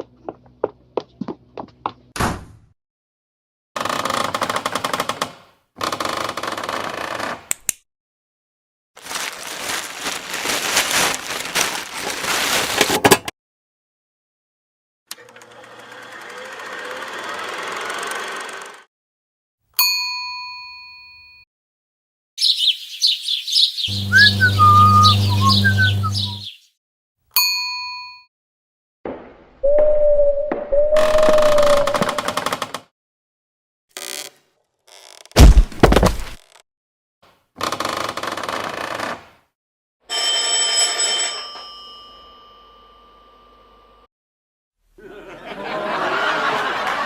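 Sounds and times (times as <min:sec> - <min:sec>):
bell ding: 0:19.8 - 0:21.4, 0:27.4 - 0:28.3, 0:40.2 - 0:43.7
birdsong chirps: 0:22.4 - 0:26.7
whistled gliding notes: 0:23.9 - 0:26.4, 0:29.6 - 0:32.2.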